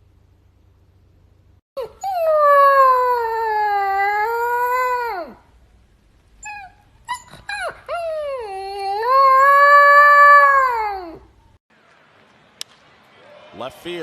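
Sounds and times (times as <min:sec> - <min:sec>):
dog howling and yipping: 0:01.8 - 0:05.4, 0:06.4 - 0:11.3.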